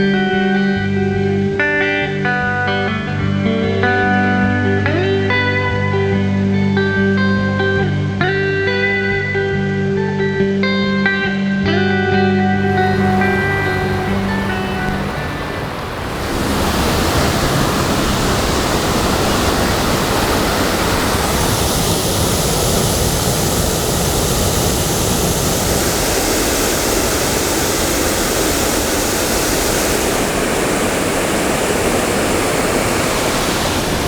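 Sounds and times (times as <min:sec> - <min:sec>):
waterfall rushing: 0:12.6 - 0:34.0.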